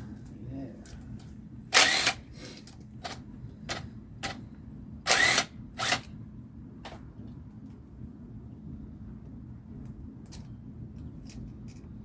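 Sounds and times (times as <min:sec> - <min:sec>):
short loud tool bursts: 0:01.7 - 0:02.2.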